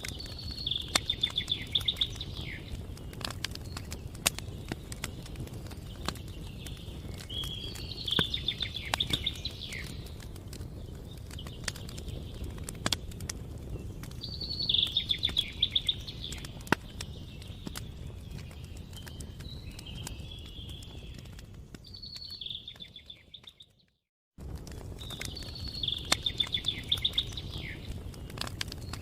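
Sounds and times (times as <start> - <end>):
campfire crackling: 0.0 - 23.7, 24.3 - 29.0
songbird trilling: 0.2 - 2.7, 7.3 - 10.0, 14.3 - 16.6, 25.3 - 27.9.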